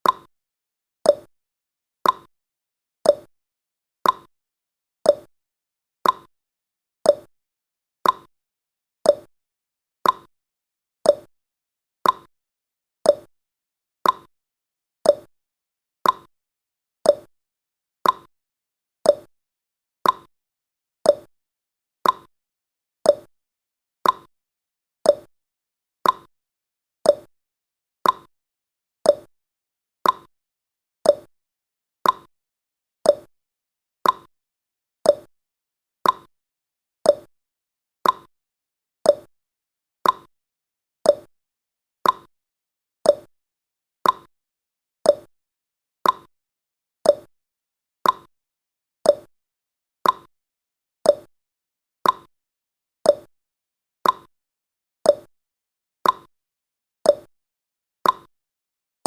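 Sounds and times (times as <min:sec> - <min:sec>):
timer ticking: 0:00.0 - 0:00.3, 0:01.1 - 0:01.3, 0:02.0 - 0:02.3, 0:03.1 - 0:03.3, 0:04.0 - 0:04.3, 0:05.1 - 0:05.3, 0:06.0 - 0:06.3, 0:07.1 - 0:07.3, 0:08.0 - 0:08.3, 0:09.1 - 0:09.3, 0:10.0 - 0:10.3, 0:11.1 - 0:11.3, 0:12.0 - 0:12.3, 0:13.1 - 0:13.3, 0:14.0 - 0:14.3, 0:15.1 - 0:15.3, 0:16.0 - 0:16.3, 0:17.1 - 0:17.3, 0:18.0 - 0:18.3, 0:19.1 - 0:19.3, 0:20.0 - 0:20.3, 0:21.1 - 0:21.3, 0:22.0 - 0:22.3, 0:23.1 - 0:23.3, 0:24.0 - 0:24.3, 0:25.1 - 0:25.3, 0:26.0 - 0:26.3, 0:27.1 - 0:27.3, 0:28.0 - 0:28.3, 0:29.1 - 0:29.3, 0:30.0 - 0:30.3, 0:31.0 - 0:31.3, 0:32.0 - 0:32.3, 0:33.1 - 0:33.3, 0:34.0 - 0:34.3, 0:35.1 - 0:35.3, 0:36.0 - 0:36.3, 0:37.1 - 0:37.3, 0:38.0 - 0:38.3, 0:39.1 - 0:39.3, 0:40.0 - 0:40.3, 0:41.1 - 0:41.3, 0:42.0 - 0:42.3, 0:43.1 - 0:43.3, 0:44.0 - 0:44.3, 0:45.1 - 0:45.3, 0:46.0 - 0:46.3, 0:47.0 - 0:47.3, 0:48.0 - 0:48.3, 0:49.1 - 0:49.3, 0:50.0 - 0:50.3, 0:51.1 - 0:51.3, 0:52.0 - 0:52.3, 0:53.1 - 0:53.3, 0:54.0 - 0:54.3, 0:55.1 - 0:55.3, 0:56.0 - 0:56.3, 0:57.1 - 0:57.3, 0:58.0 - 0:58.3.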